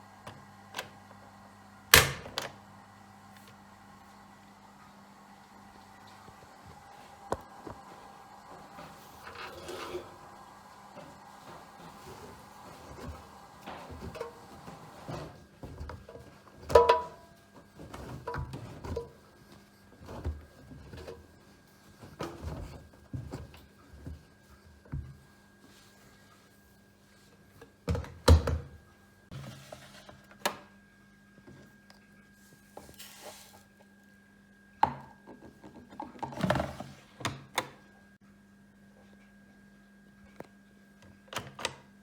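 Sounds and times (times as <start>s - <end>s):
washing machine thuds and knocks: 27.9s - 28.8s.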